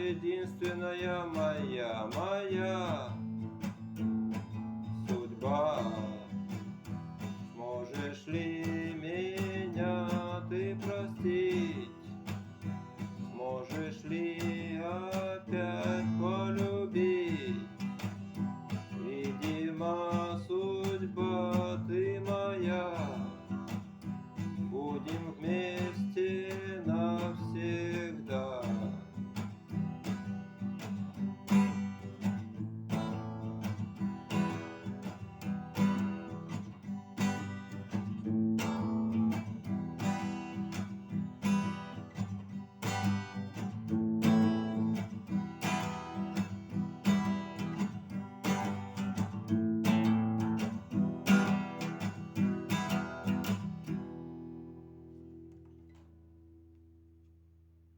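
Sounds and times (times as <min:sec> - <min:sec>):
person singing: 0:00.0 - 0:03.2, 0:05.0 - 0:06.6, 0:07.5 - 0:12.1, 0:13.3 - 0:18.1, 0:18.8 - 0:23.6, 0:24.7 - 0:29.1
strummed acoustic guitar: 0:00.0 - 0:57.5.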